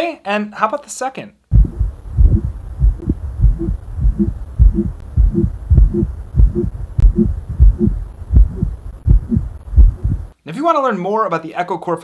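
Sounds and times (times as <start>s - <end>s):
heartbeat through stethoscope: 1.5s - 10.3s.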